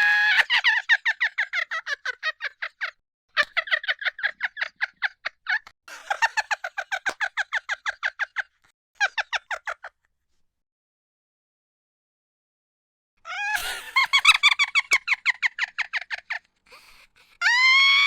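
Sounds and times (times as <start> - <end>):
person laughing: 13.3 - 17.6
person breathing: 16.7 - 17.4.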